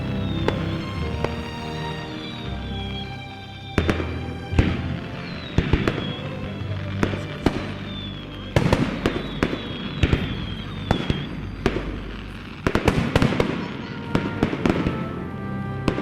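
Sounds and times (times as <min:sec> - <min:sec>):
music: 0:00.0 - 0:16.0
fireworks bangs and crackles: 0:03.8 - 0:16.0.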